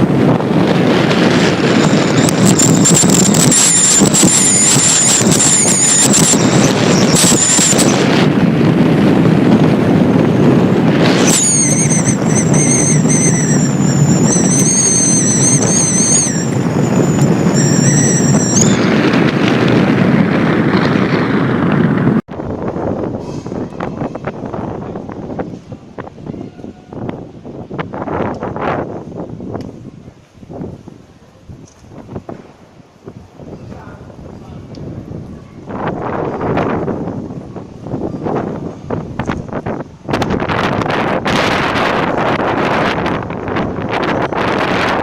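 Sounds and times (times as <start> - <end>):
strong wind buffeting microphone: 0.0 - 45.0
high wavering whistle: 1.7 - 8.0, 11.0 - 18.9.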